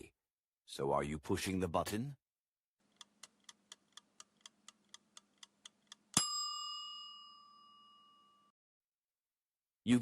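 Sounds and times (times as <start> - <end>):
quick timer ticks: 2.9 - 6.3
bell-like ding: 6.2 - 8.5.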